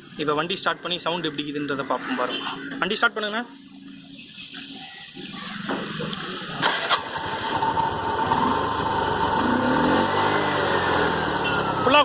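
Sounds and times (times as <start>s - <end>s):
auto-rickshaw engine starting and running: 6.2s - 12.0s.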